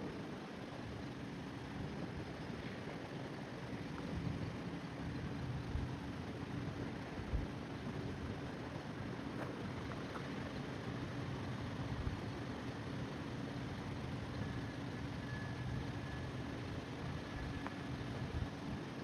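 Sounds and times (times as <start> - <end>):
faint high squeal: 14.4 - 16.4.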